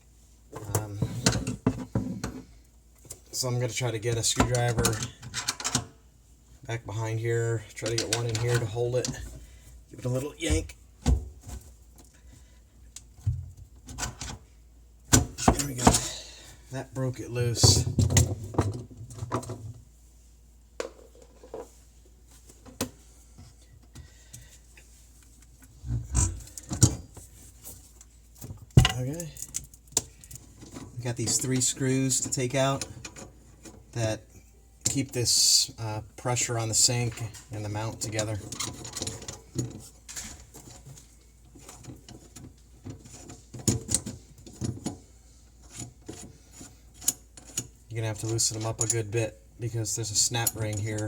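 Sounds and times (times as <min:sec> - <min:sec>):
knocks and clunks of handling tools: 0:00.5 - 0:02.5, 0:04.2 - 0:06.0, 0:10.4 - 0:11.7, 0:15.1 - 0:16.3, 0:17.6 - 0:19.8, 0:28.4 - 0:33.8.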